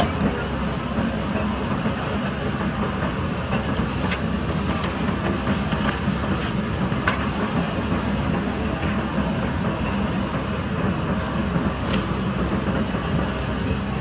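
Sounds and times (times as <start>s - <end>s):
diesel engine running under load: 0.0s - 14.0s.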